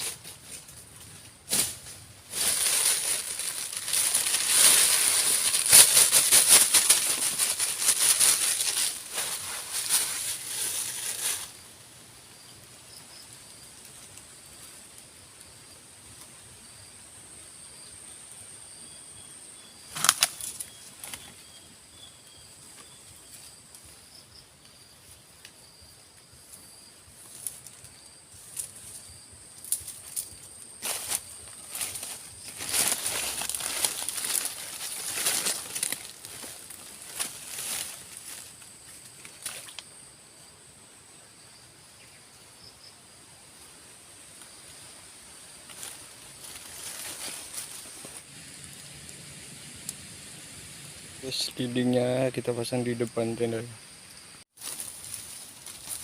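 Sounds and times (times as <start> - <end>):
rapid rustling and flapping: 0.0 - 11.5.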